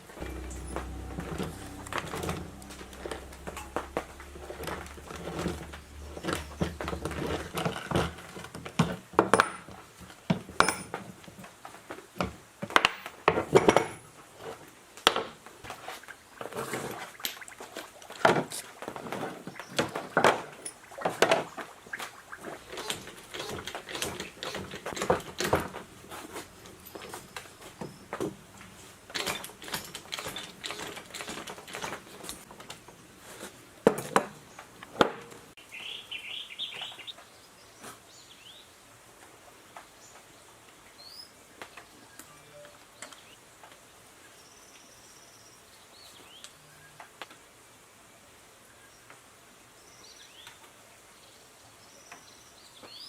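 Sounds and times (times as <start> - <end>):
low hum: 0.0 - 8.6
metal tools clinking on workbench: 10.6 - 11.0.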